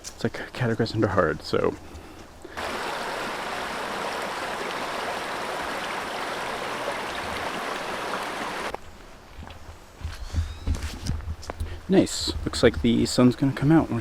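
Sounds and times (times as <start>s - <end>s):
mountain stream rushing: 2.5s - 8.8s.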